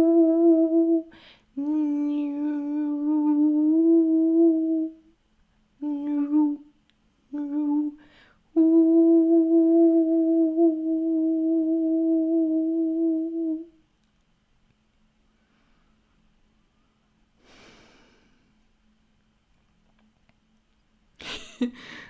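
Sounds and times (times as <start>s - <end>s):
woman humming: 0.0s - 5.0s, 5.8s - 6.7s, 7.3s - 13.8s
breaths: 1.1s - 1.5s, 8.0s - 8.5s, 15.3s - 16.2s, 16.8s - 18.6s, 21.7s - 22.0s.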